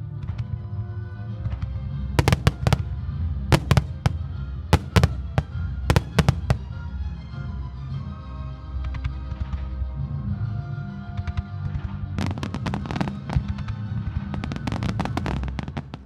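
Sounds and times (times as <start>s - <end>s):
fireworks bangs: 2.2s - 7.0s, 14.4s - 16.0s.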